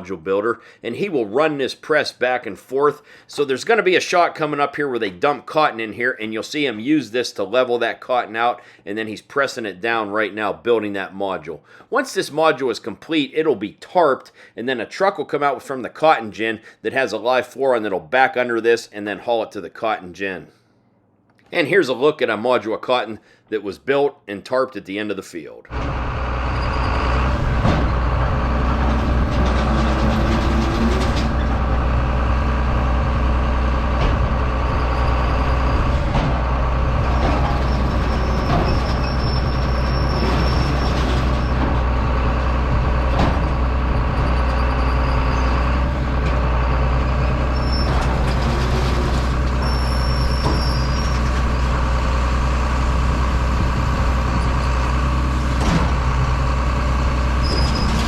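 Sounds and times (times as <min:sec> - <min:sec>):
diesel farm machinery running: 0:25.7 - 0:58.0.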